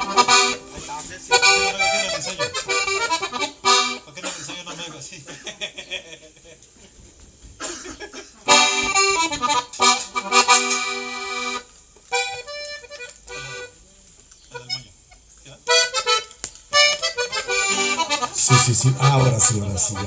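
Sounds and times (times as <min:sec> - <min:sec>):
accordion chords and notes: 0:00.0 - 0:05.1, 0:08.4 - 0:13.8, 0:14.5 - 0:20.0.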